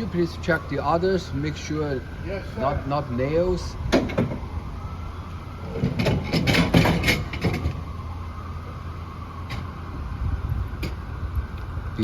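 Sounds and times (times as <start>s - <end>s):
vehicle engine rumble: 0.0s - 12.0s
sharp clattering knocks: 5.8s - 7.8s.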